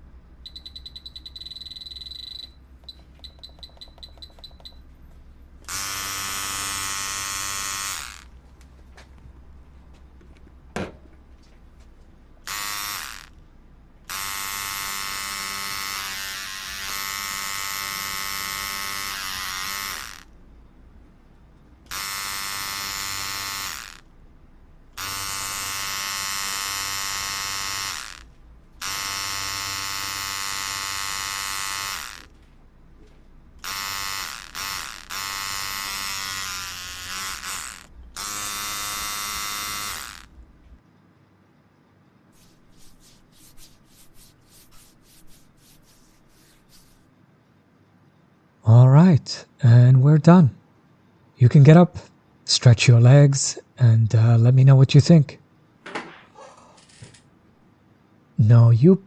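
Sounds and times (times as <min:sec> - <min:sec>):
electric tattoo machine buzzing: 0:05.7 - 0:08.4, 0:12.4 - 0:13.4, 0:14.1 - 0:20.3, 0:21.9 - 0:24.1, 0:25.0 - 0:32.4, 0:33.6 - 0:40.4.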